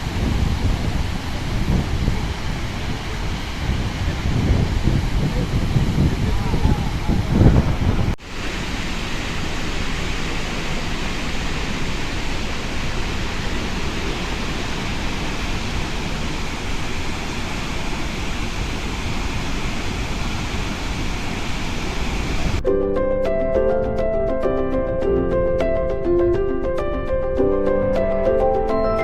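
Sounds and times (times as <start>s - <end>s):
heavy water rushing from dam: 0.0s - 22.6s.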